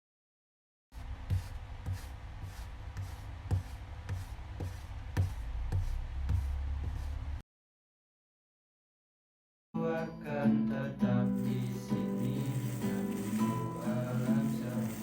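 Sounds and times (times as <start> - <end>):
low steady rumble: 1.0 - 7.4
footsteps walking: 11.3 - 15.0.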